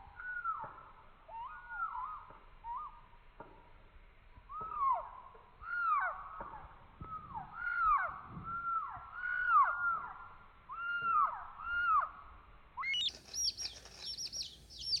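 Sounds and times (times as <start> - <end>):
slowed chick calls: 12.8 - 15.0
quick high chirps: 12.9 - 15.0.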